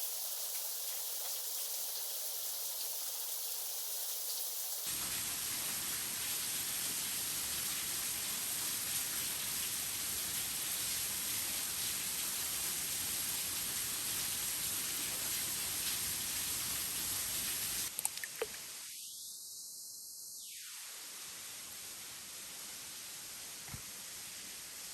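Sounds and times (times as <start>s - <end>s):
falling water hissing: 0.0s - 18.8s.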